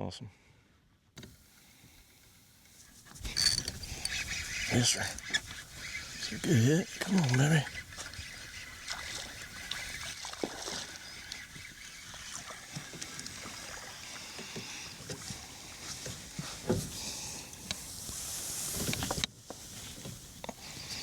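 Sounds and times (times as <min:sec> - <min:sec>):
water splashing: 0:03.2 - 0:15.8.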